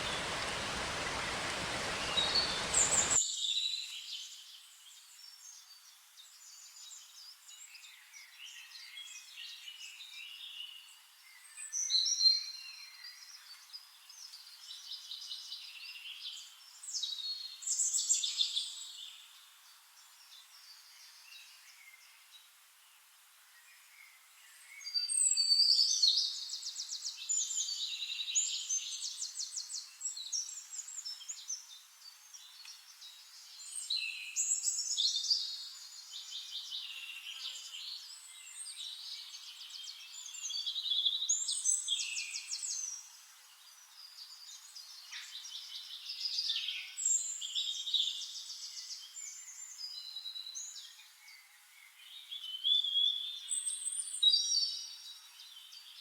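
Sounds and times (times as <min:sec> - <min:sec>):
songbirds singing: 0:00.0 - 0:03.2.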